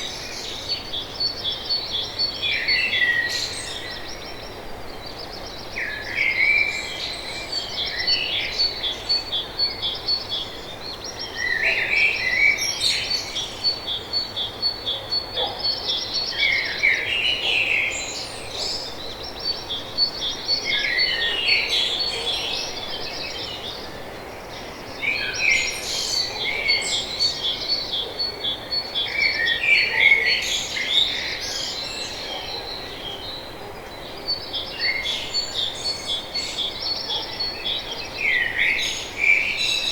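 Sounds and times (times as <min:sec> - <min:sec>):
songbirds singing: 0:00.0 - 0:39.9.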